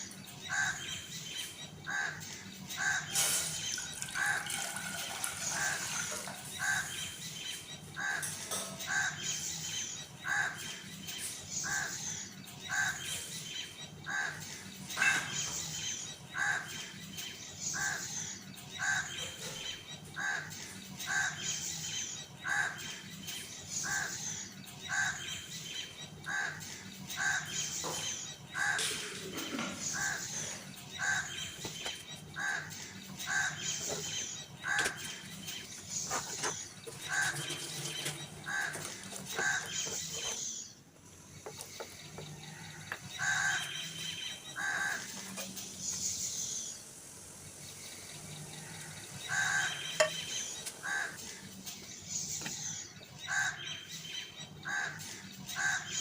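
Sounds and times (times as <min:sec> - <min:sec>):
crows cawing: 0:00.4 - 0:01.0, 0:01.8 - 0:03.3, 0:04.0 - 0:07.0, 0:08.0 - 0:09.4, 0:10.2 - 0:10.8, 0:11.6 - 0:13.1, 0:14.0 - 0:15.4, 0:16.3 - 0:16.8, 0:17.7 - 0:19.3, 0:20.1 - 0:21.6, 0:22.4 - 0:22.9, 0:23.8 - 0:25.4, 0:26.2 - 0:27.7, 0:28.5 - 0:31.6, 0:32.3 - 0:35.1, 0:38.4 - 0:39.8, 0:42.5 - 0:43.9, 0:44.6 - 0:45.2, 0:48.7 - 0:50.2, 0:50.8 - 0:51.3, 0:53.2 - 0:53.8, 0:54.6 - 0:56.0.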